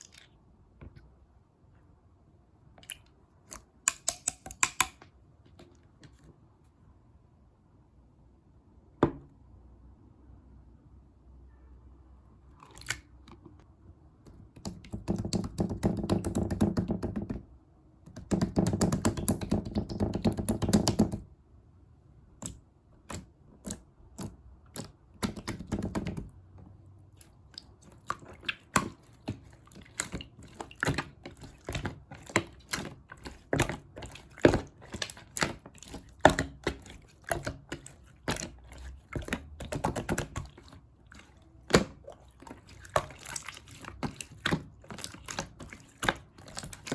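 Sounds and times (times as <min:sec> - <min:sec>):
slime squishing wet crackling: 0:12.6 - 0:13.2, 0:27.0 - 0:46.9.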